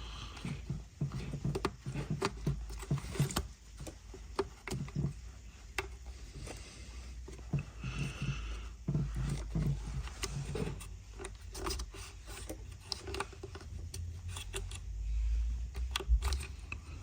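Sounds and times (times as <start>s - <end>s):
tools handling engine parts: 0.4s - 6.6s.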